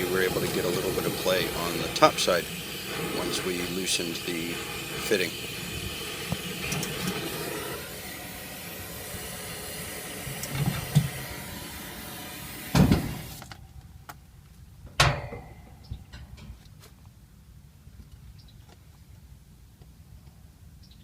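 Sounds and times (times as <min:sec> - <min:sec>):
steady hissing noise: 0:00.0 - 0:13.5.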